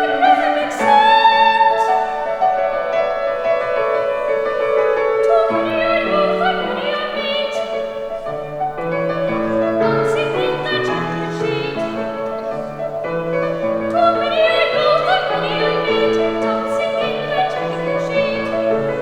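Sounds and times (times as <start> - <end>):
keyboard accompaniment: 0.0 - 19.0
boys' choir singing: 13.8 - 19.0.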